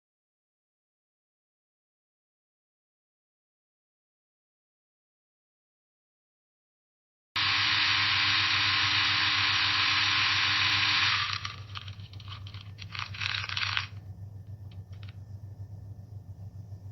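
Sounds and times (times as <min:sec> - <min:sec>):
coffee grinder grinding beans: 0:07.4 - 0:14.1
low steady hum: 0:08.3 - 0:16.9.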